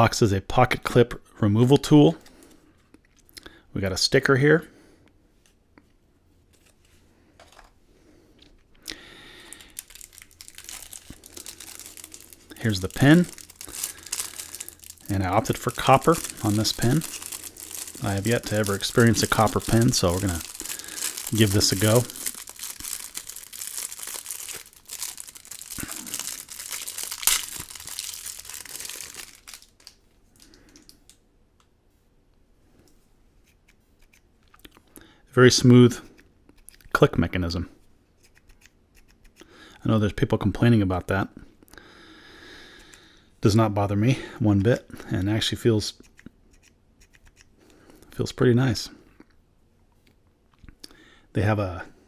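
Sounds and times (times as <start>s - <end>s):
wrapping crinkling and crackling: 8.9s - 31.2s
packaging rustling: 9.4s - 30.9s.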